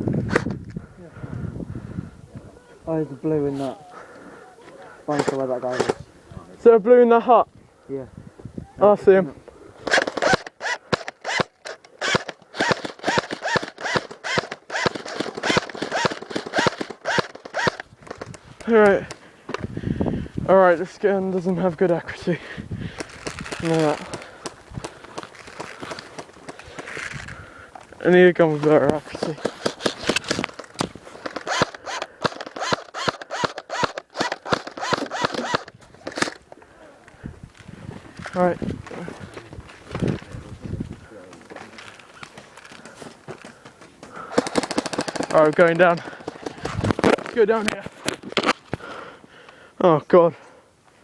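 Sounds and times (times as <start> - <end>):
airsoft rifle shots: 5.1 - 6.1, 9.8 - 17.9, 29.1 - 30.5, 31.2 - 36.4, 44.3 - 46.8
airsoft rifle firing single shots: 9.9 - 17.8.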